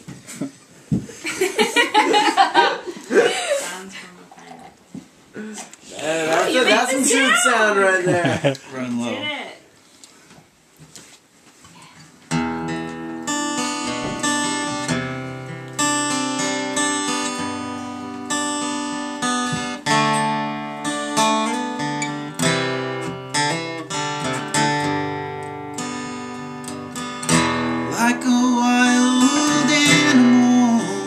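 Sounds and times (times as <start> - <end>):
acoustic guitar chords: 12.3 - 31.0.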